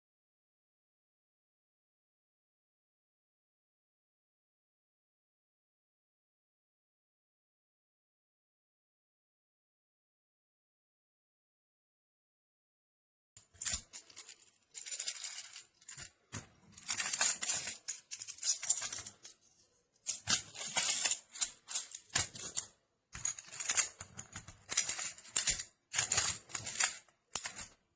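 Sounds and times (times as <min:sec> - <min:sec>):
plastic blocks clicking and clattering: 0:13.4 - 0:27.8.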